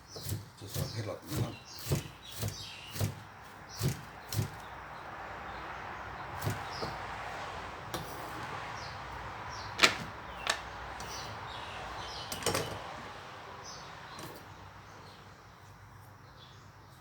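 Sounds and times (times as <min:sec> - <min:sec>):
kitchen items knocking: 0:09.8 - 0:10.7.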